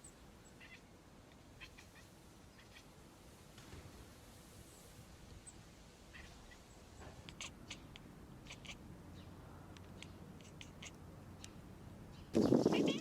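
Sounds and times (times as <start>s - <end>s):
cat chattering clicks: 7.2s - 8.8s, 9.7s - 11.6s.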